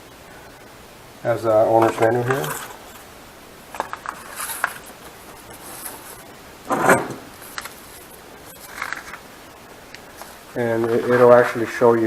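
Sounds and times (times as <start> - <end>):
paper pages rustling: 1.8 - 3.0, 3.7 - 6.3, 7.3 - 9.3, 9.9 - 11.8.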